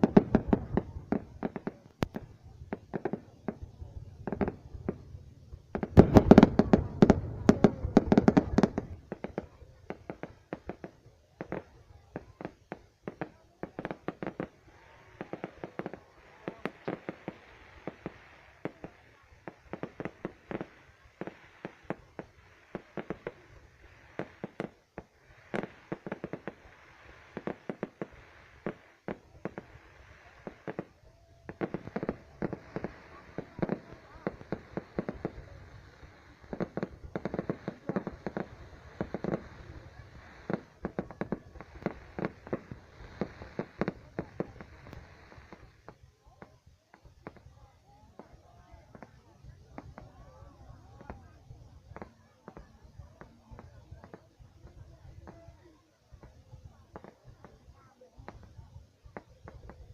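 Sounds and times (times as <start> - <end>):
fireworks bangs and cracks: 0.0 - 59.9.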